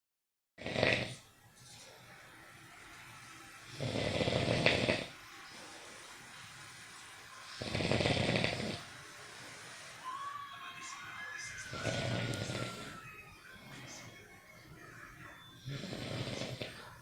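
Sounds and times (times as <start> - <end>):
person snoring: 0.6 - 1.2, 3.7 - 5.1, 7.5 - 8.8, 11.7 - 13.0, 15.6 - 16.9.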